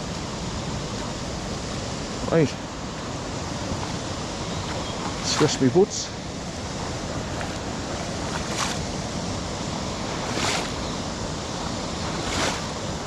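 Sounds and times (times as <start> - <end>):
river water running: 0.0 - 13.0
boots splashing in water: 7.2 - 8.9, 10.0 - 10.8, 12.0 - 12.7.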